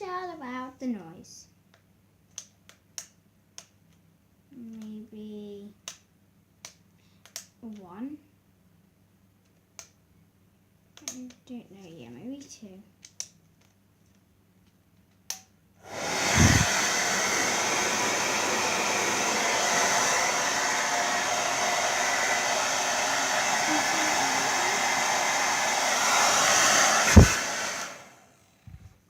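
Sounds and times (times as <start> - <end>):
hairdryer fan whooshing: 15.8 - 28.9
hairdryer switch knock: 15.9 - 28.0.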